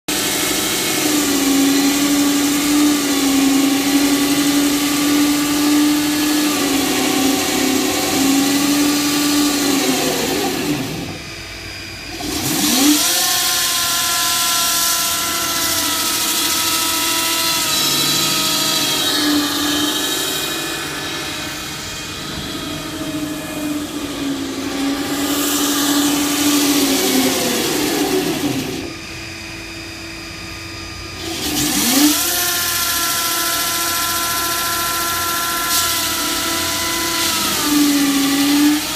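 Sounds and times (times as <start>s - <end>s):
power tool cutting concrete: 0.0s - 38.9s.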